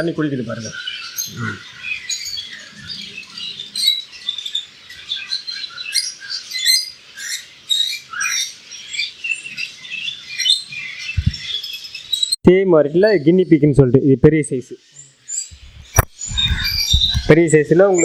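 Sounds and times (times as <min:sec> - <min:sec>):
small pets chirping and squeaking: 0:00.0 - 0:09.6, 0:10.4 - 0:12.4, 0:14.8 - 0:18.0
quick rising calls: 0:15.5 - 0:17.4.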